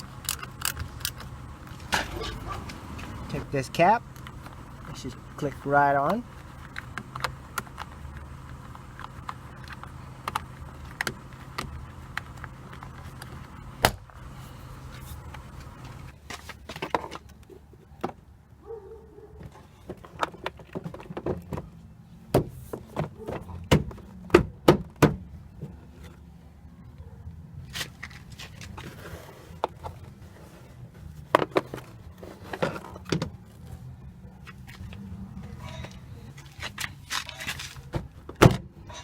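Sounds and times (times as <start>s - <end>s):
low steady hum: 0.0s - 16.7s.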